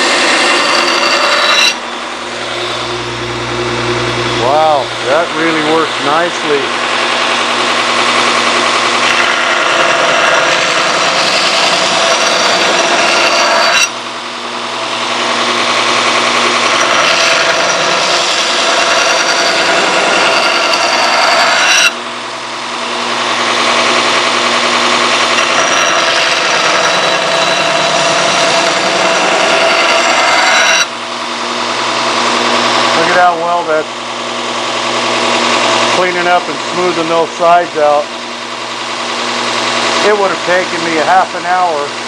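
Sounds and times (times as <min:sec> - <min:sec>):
grinder grinding steel blade: 0:00.0 - 0:03.3, 0:04.2 - 0:14.1, 0:14.9 - 0:22.2, 0:22.8 - 0:33.8
grinder motor hum: 0:00.0 - 0:42.0.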